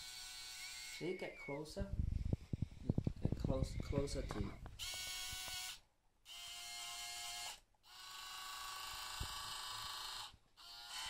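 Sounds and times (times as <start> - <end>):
toy tank electric motors whining: 4.8 - 11.0.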